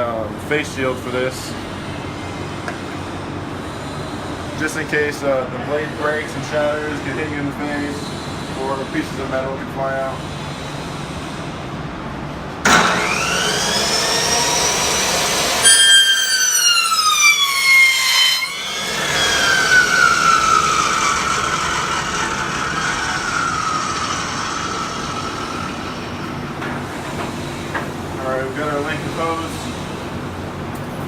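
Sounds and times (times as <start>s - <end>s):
cutoff saw whine: 12.6s - 30.5s
saw blade cutting hose: 12.7s - 30.0s.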